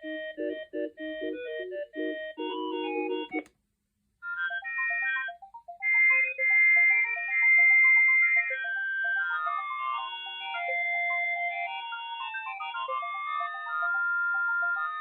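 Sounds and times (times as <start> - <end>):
synthesized ringtone melody: 0.0 - 3.4, 4.2 - 15.0
phone click: 3.3 - 3.5
high electronic ringtone tune: 4.3 - 10.7.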